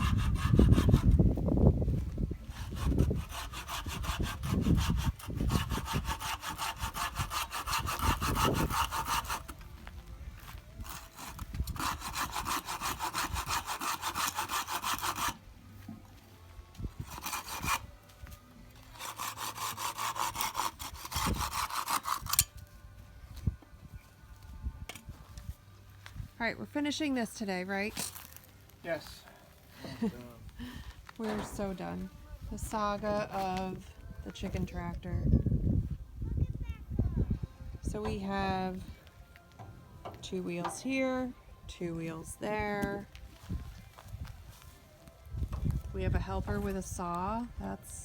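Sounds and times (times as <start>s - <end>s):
handsaw cutting wood: 0.0s - 1.2s, 2.5s - 9.6s, 10.8s - 15.4s, 17.0s - 17.9s, 18.8s - 22.5s.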